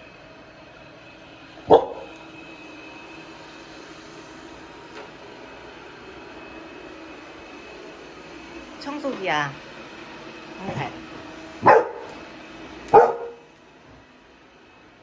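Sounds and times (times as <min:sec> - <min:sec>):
robot vacuum humming: 0:00.2 - 0:15.0
puppy barking: 0:01.6 - 0:02.2, 0:11.6 - 0:12.2, 0:12.9 - 0:13.5.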